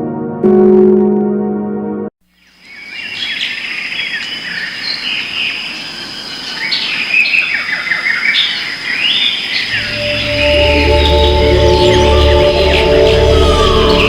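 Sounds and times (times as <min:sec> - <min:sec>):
birds chirping: 0:02.5 - 0:14.0
high insect drone: 0:09.6 - 0:14.0.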